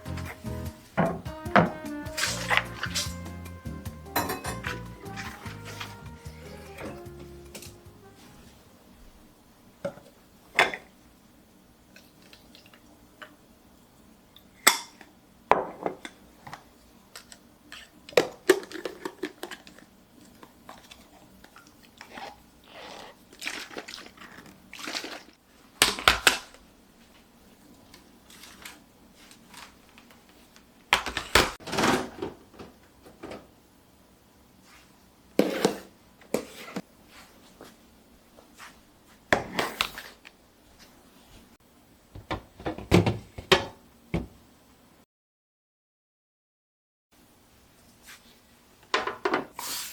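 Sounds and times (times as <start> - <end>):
rustling: 0.0 - 3.6, 4.3 - 8.6
objects knocking and clattering: 0.1 - 3.0, 4.1 - 5.6, 31.0 - 33.5, 42.2 - 44.4.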